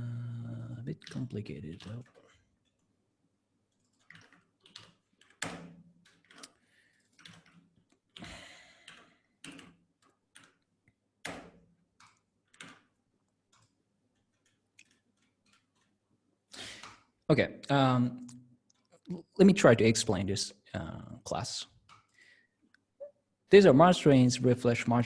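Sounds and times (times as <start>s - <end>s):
keyboard and mouse clicks: 0.9s - 2.9s, 3.7s - 16.0s, 16.7s - 17.3s, 21.8s - 22.8s.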